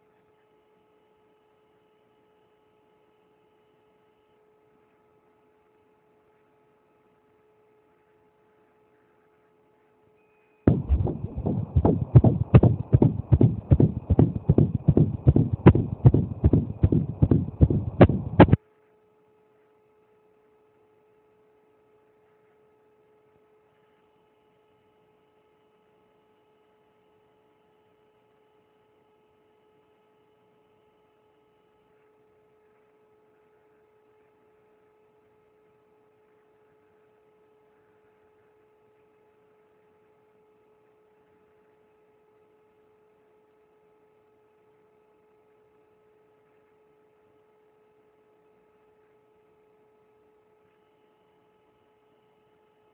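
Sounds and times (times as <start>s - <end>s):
loud rhythmic pulsing: 10.7s - 18.6s.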